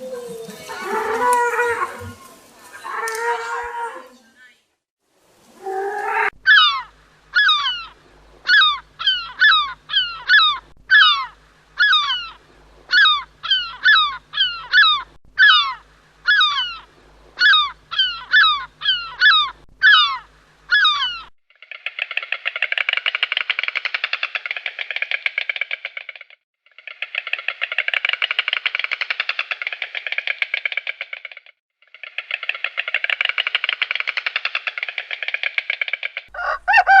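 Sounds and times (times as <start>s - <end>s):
animal calls sliding down in pitch: 0.0s - 4.1s, 5.6s - 6.7s.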